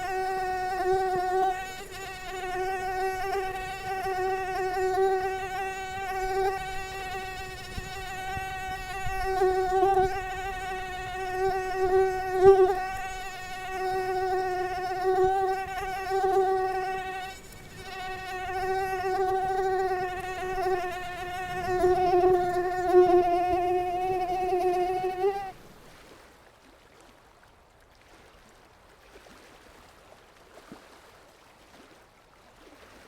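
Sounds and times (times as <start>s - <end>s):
mosquito wingbeat whine: 0.0s - 25.6s.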